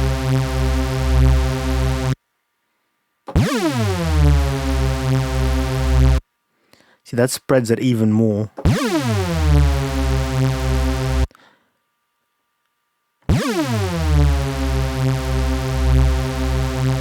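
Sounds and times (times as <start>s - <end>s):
pulsing synth tone with pitch swoop: 3.3s - 6.2s, 8.6s - 11.3s, 13.3s - 17.0s.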